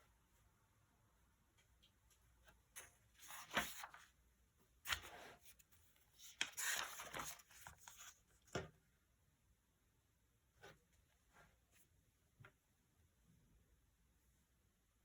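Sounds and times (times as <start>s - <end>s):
paper rustling: 2.4s - 4.2s, 4.8s - 8.6s.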